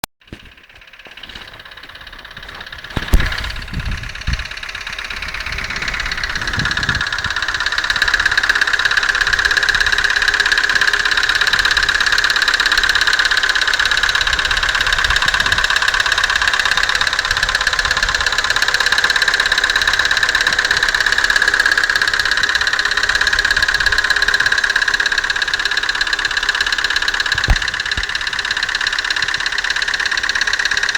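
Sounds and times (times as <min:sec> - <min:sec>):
car engine idling with knocking: 0:00.2 - 0:30.9
sharp thumps: 0:00.3 - 0:07.6, 0:27.3 - 0:28.4.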